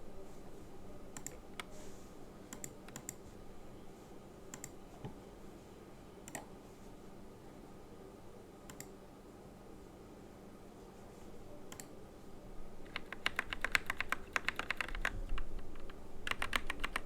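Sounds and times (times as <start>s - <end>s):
keyboard key clicks: 12.9s - 17.0s.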